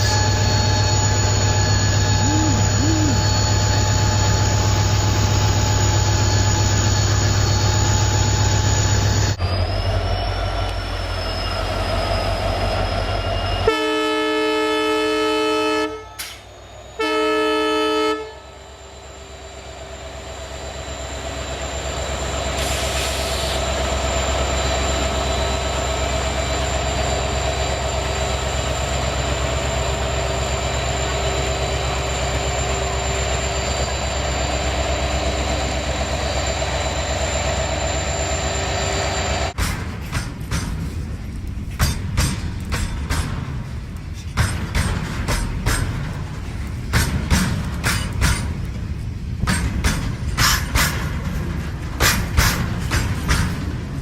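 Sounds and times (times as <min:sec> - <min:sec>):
toy locomotive engine drone: 0:00.0 - 0:09.4
rising whine: 0:00.0 - 0:13.7, 0:18.6 - 0:39.6
locomotive horn blasts: 0:13.6 - 0:16.4, 0:17.0 - 0:18.6.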